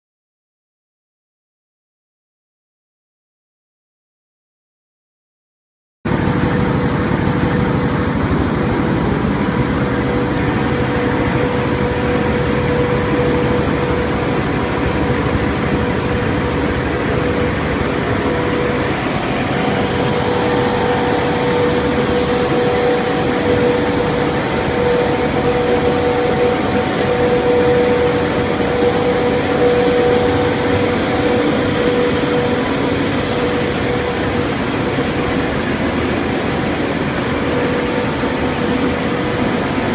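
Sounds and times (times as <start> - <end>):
pellet machine droning: 6.1 - 39.9.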